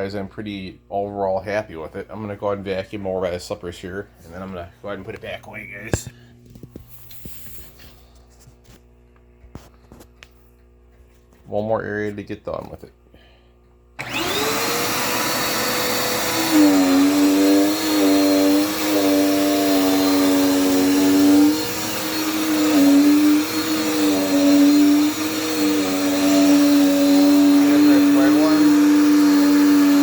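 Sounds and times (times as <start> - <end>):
vacuum cleaner air rush: 14.0 - 30.0
vacuum cleaner hum: 14.0 - 30.0.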